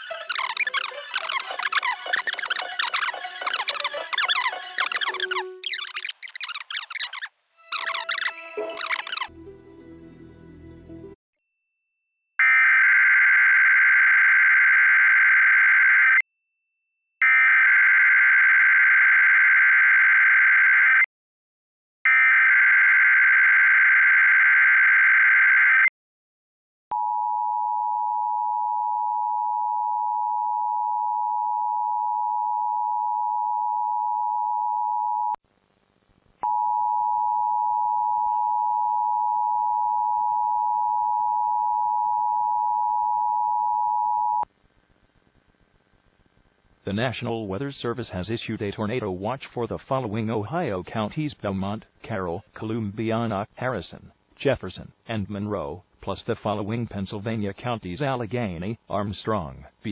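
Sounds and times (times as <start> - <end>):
buzzing digital data bursts: 0.0 - 9.3
two-tone attention signal: 0.0 - 9.3.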